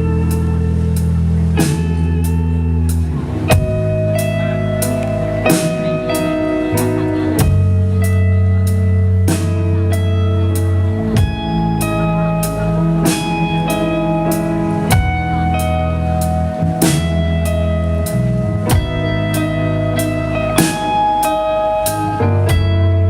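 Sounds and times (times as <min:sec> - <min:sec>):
guitar chords: 0:00.0 - 0:23.0.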